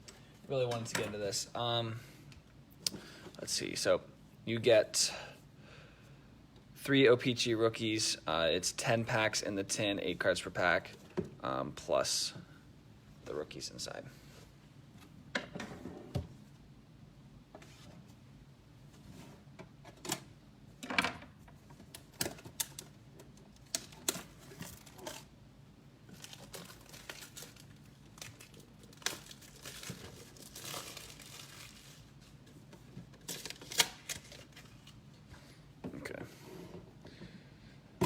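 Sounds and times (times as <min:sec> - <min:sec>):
plastic packaging crinkling and tearing: 0:23.6 - 0:25.3, 0:26.1 - 0:35.0.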